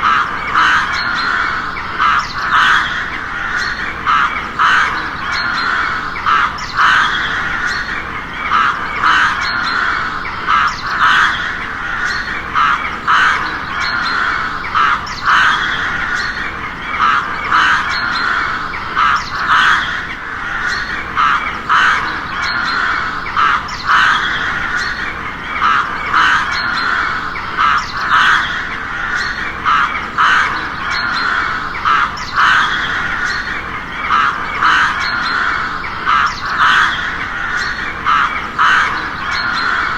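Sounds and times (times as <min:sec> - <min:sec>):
crows cawing: 0:00.0 - 0:39.9.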